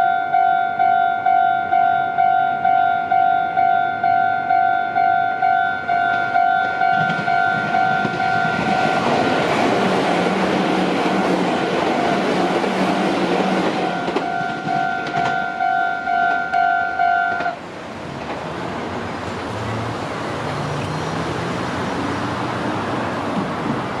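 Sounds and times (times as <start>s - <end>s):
two-tone crossing warning bell: 0.0s - 9.8s, 11.0s - 12.7s, 13.4s - 17.6s
train wheel noise: 5.8s - 24.0s.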